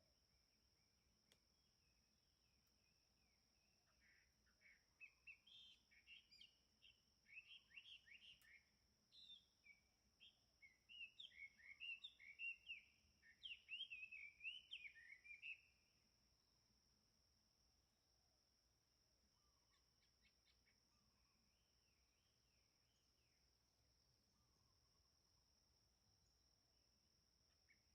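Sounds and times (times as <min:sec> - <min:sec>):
songbirds twittering: 0:00.5 - 0:15.9, 0:19.4 - 0:25.2.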